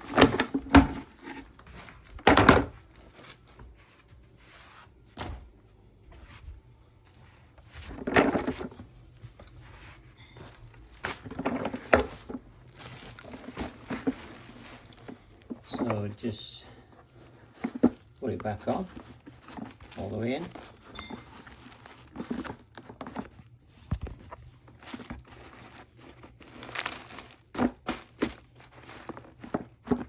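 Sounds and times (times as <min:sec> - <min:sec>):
cloth bag rustling: 0:07.7 - 0:30.0.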